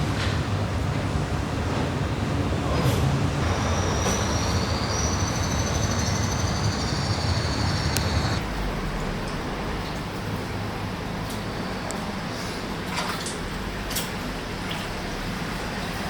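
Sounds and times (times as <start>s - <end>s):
rail car rumbling: 0.0s - 16.0s
high-pitched wheel squeal: 3.4s - 8.4s.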